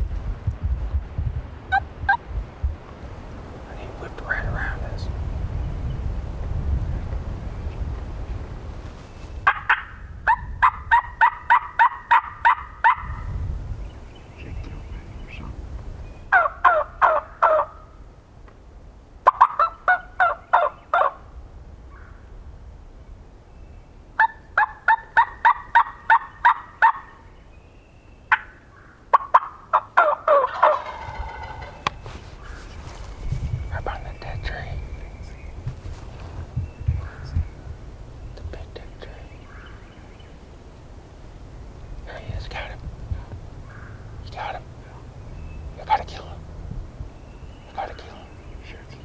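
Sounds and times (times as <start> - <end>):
wind rumbling on microphone: 0.0 - 19.2, 30.3 - 49.0
turkey gobbling: 9.5 - 13.0, 16.3 - 17.8, 19.2 - 21.2, 24.2 - 27.1, 29.1 - 32.7
turkey yelps: 9.5 - 13.2, 16.3 - 17.8, 19.2 - 21.2, 24.2 - 27.1, 29.1 - 31.8.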